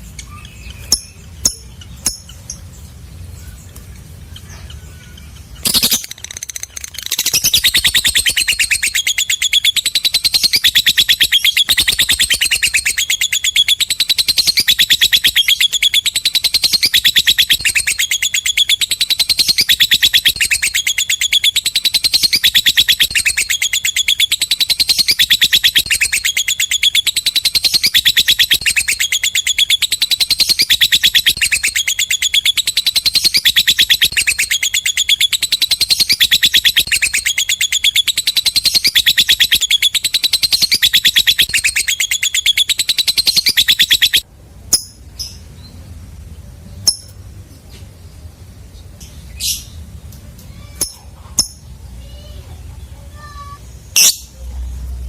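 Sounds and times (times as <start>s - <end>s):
lovebird shrill chattering: 4.4s - 45.4s, 53.3s - 54.4s.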